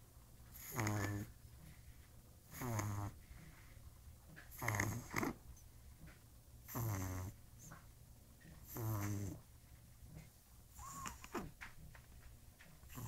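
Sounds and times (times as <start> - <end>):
puppy snoring: 0.5 - 3.7, 4.4 - 5.6, 6.6 - 7.9, 8.5 - 11.7.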